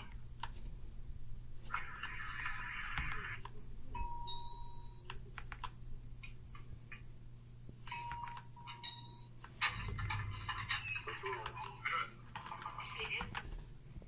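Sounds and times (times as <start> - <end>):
steady electronic beep: 9.8 - 11.9.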